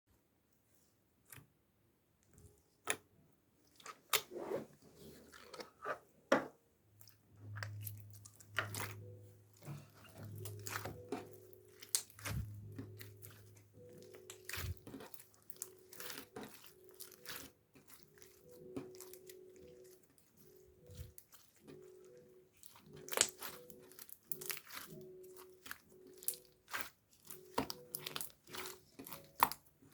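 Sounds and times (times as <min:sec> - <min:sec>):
crunching and clicking: 0:09.6 - 0:29.9.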